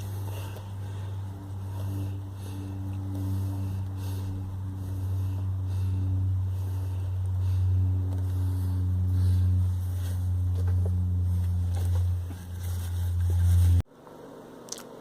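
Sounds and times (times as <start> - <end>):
air compressor humming: 0.0 - 13.8.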